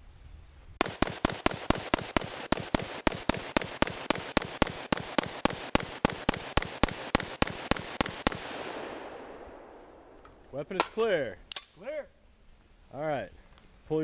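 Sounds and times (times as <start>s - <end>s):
rifle firing rapidly: 0.8s - 9.3s
gunshot echo: 0.8s - 11.0s.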